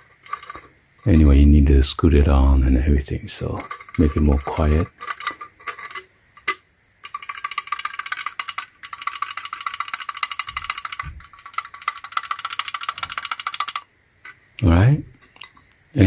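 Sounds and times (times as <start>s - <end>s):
mechanical keyboard typing: 7.0s - 13.9s.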